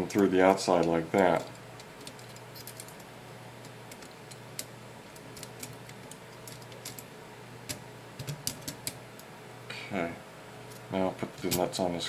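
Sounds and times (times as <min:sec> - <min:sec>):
small metal parts clicking: 0:00.0 - 0:07.1
low steady hum: 0:00.0 - 0:12.0.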